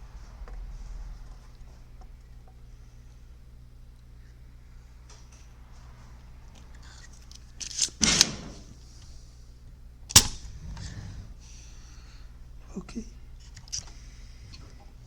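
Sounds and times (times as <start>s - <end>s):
low steady hum: 0.0s - 15.0s
capacitor snapping loose: 10.1s - 10.5s.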